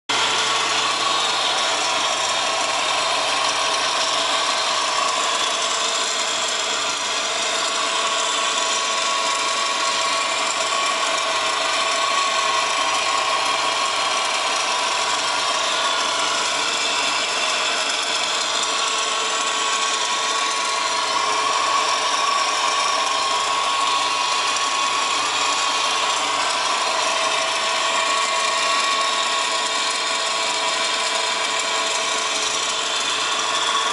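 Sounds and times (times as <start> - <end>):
car engine idling: 0.0 - 33.9
steady whine from pulley: 0.1 - 33.9.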